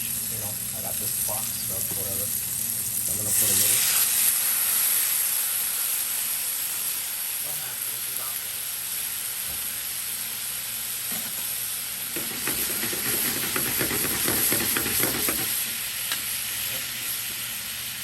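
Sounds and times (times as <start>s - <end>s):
chicken sizzling in a frying pan: 0.0s - 18.0s
utensil scraping and knocking pan: 12.2s - 15.5s.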